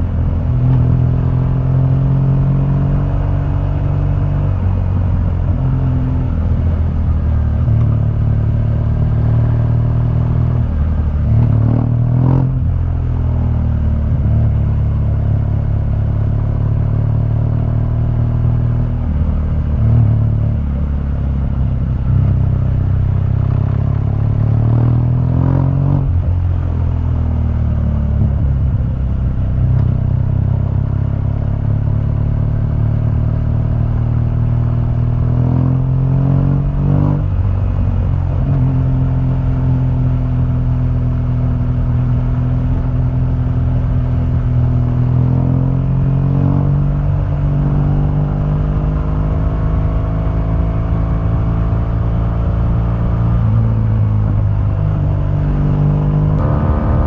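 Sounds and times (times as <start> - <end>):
motorcycle engine running: 46.8 - 57.0.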